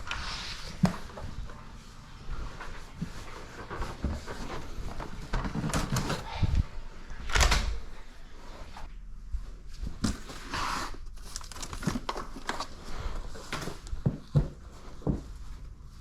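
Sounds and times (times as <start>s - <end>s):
handling knocks and rustling: 9.4s - 16.0s.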